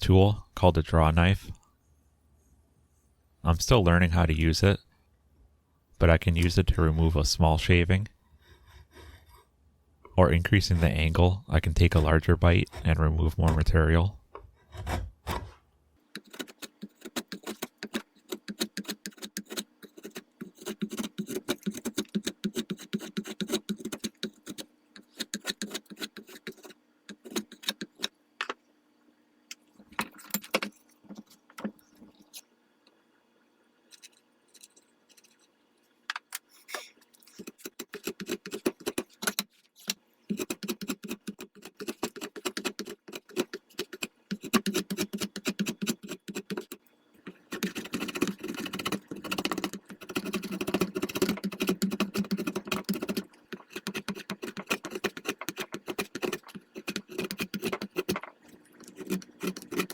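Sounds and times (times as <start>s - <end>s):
draw knife shaving wood: 16.1s - 28.1s, 37.3s - 39.5s, 40.3s - 59.9s.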